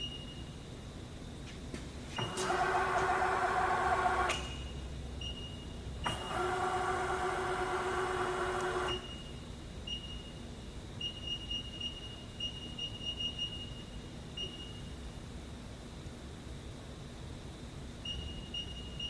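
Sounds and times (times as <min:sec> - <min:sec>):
milling machine motor hum: 0:02.2 - 0:04.4, 0:06.0 - 0:09.0, 0:14.4 - 0:18.1
faint high whine pulses: 0:14.4 - 0:18.4.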